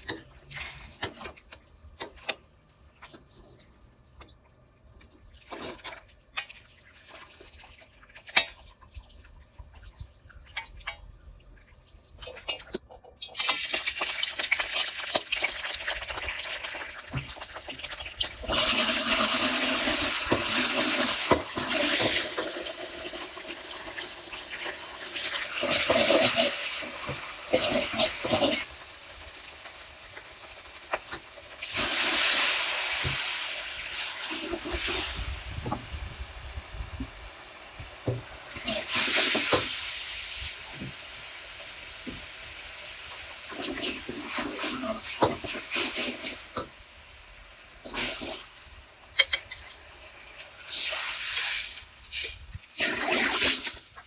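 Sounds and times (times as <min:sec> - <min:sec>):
eggplant frying in hot oil: 0:12.1 - 0:54.0.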